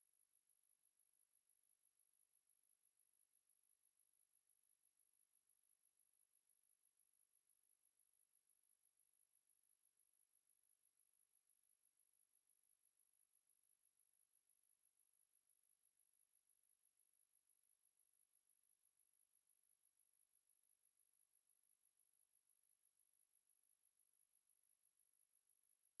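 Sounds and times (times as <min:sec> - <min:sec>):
high-pitched sine test tone: 0:15.7 - 0:26.0.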